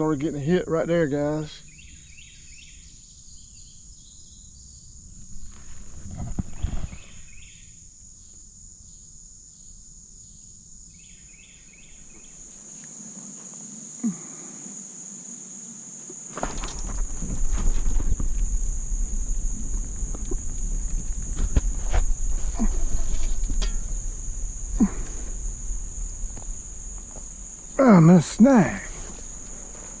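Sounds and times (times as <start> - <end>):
crickets chirping: 0.0 - 30.0
rustling: 16.1 - 30.0
low bumps: 16.4 - 30.0.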